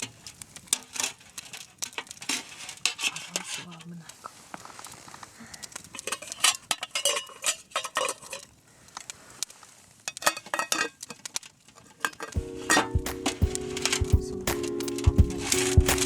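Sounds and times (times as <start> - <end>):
metal utensils clinking on cookware: 6.0 - 8.5.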